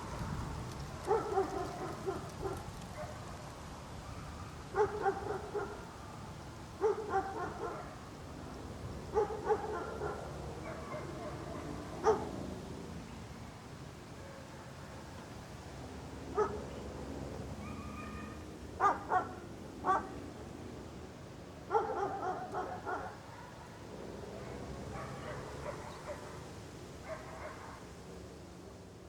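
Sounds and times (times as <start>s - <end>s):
outdoor background noise: 0.0s - 29.0s
dog barking: 1.1s - 3.3s, 4.0s - 5.8s, 6.8s - 8.0s, 9.1s - 12.4s, 14.2s - 15.0s, 16.3s - 16.7s, 17.6s - 20.2s, 21.7s - 23.8s, 24.4s - 26.4s, 27.0s - 27.8s.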